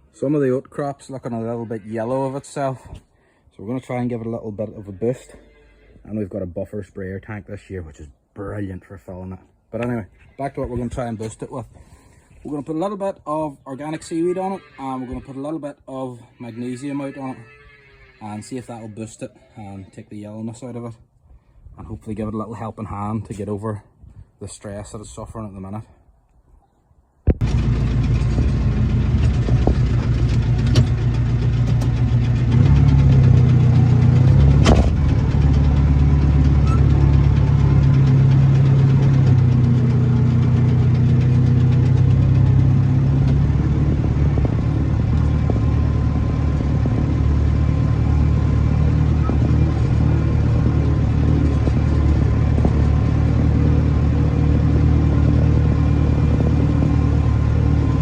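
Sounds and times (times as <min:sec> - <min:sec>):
tractor engine running: 0:27.3 - 0:58.0
sharp knock: 0:34.6 - 0:35.0.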